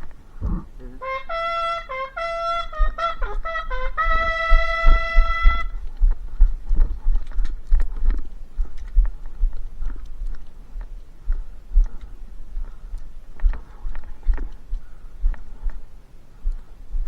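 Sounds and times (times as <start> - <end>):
low thumps of movement: 0.0 - 17.0
trumpet call: 1.0 - 5.8.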